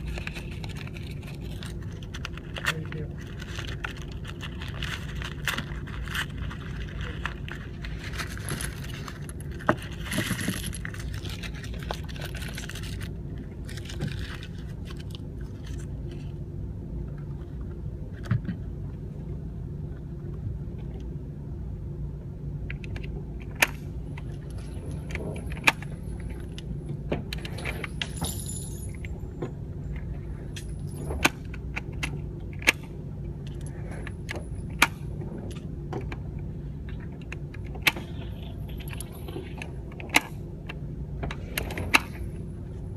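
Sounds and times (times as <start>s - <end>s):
vehicle hum: 0.0s - 42.9s
light jingling rattles: 27.5s - 29.1s.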